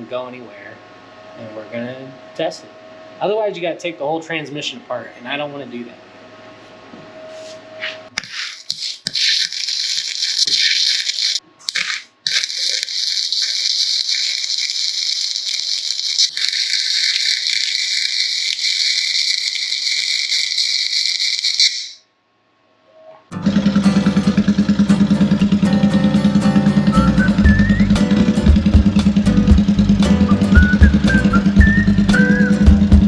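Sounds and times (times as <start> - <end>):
electric welder crackling hiss: 10.0 - 22.0
loud low pulsing sound: 23.4 - 33.0.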